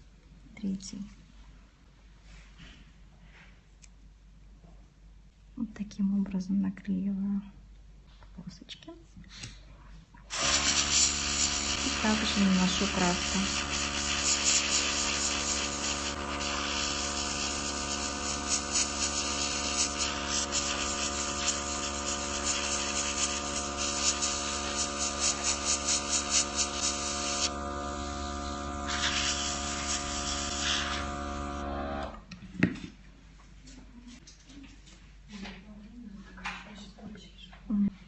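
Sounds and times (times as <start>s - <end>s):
airbrush air hiss: 10.3s - 31.6s
small compressor humming: 10.3s - 32.3s.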